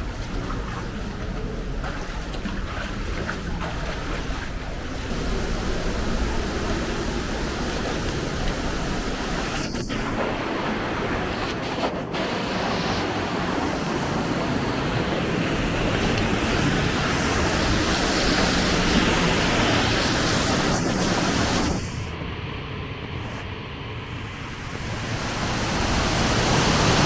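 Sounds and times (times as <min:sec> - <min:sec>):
waterfall rushing: 0:04.9 - 0:11.4, 0:12.2 - 0:22.0, 0:24.6 - 0:27.0.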